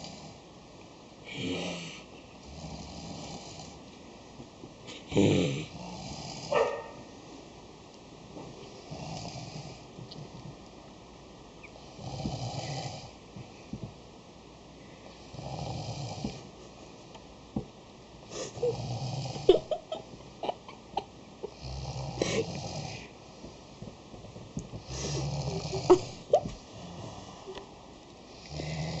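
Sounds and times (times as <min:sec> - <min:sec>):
child imitating snoring: 0:01.3 - 0:03.8, 0:05.1 - 0:06.5, 0:18.4 - 0:19.5, 0:21.5 - 0:23.1, 0:24.8 - 0:26.3, 0:28.5 - 0:29.0.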